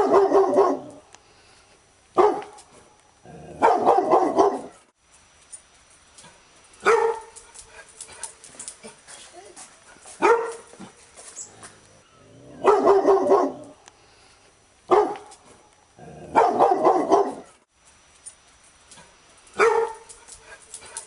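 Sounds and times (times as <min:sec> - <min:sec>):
dog barking: 0:00.0 - 0:01.0, 0:02.2 - 0:02.6, 0:03.6 - 0:04.8, 0:06.8 - 0:07.4, 0:10.2 - 0:10.7, 0:12.6 - 0:13.8, 0:14.9 - 0:15.3, 0:16.3 - 0:17.6, 0:19.6 - 0:20.1.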